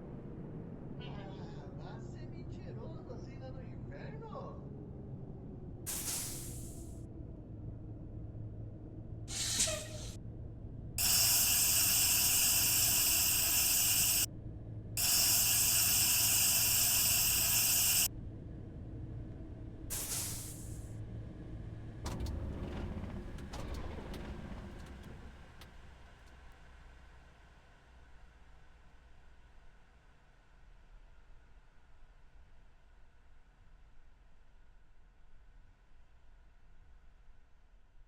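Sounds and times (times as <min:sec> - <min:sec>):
low vehicle rumble: 0:00.0 - 0:28.3
air spray hissing: 0:05.9 - 0:06.9, 0:09.3 - 0:10.2, 0:11.0 - 0:14.3, 0:15.0 - 0:18.1, 0:19.9 - 0:20.8.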